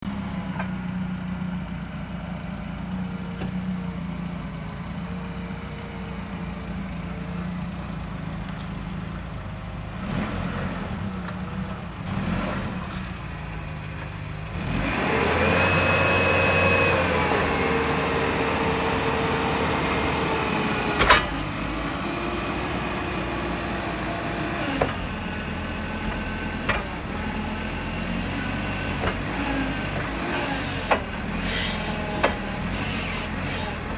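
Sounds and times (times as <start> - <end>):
forklift engine running: 0.0 - 33.9
engine whine: 2.7 - 33.9
sharp clunk: 21.0 - 21.5.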